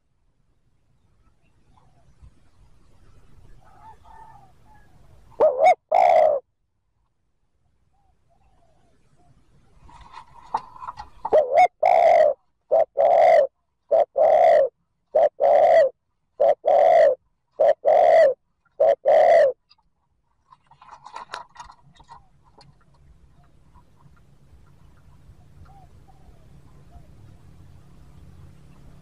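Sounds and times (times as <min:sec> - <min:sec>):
dove cooing: 0:03.6 - 0:06.4, 0:10.5 - 0:19.6, 0:25.0 - 0:27.8.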